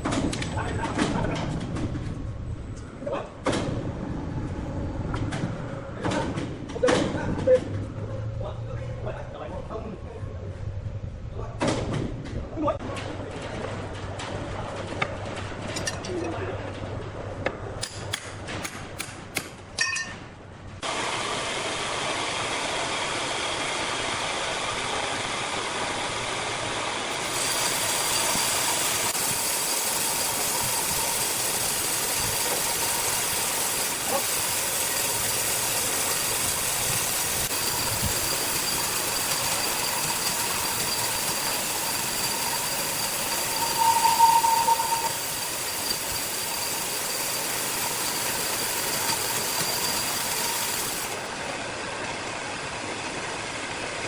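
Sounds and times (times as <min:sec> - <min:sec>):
sawmill machinery hum and hiss: 0:20.8 - 0:54.0.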